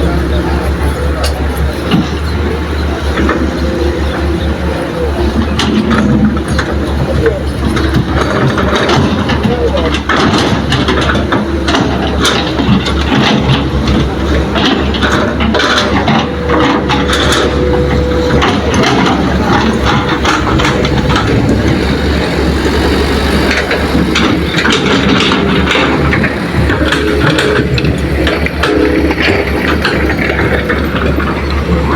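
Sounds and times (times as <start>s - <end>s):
heavy diesel engines running: 0.0s - 31.9s
knocks and clanks: 0.0s - 31.9s
steady whine: 0.0s - 31.9s.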